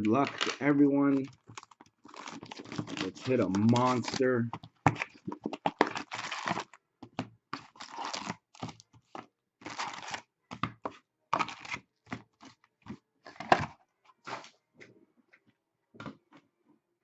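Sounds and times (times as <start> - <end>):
plastic wrap and cardboard tearing: 0.0 - 6.8, 7.6 - 8.8, 9.6 - 10.3.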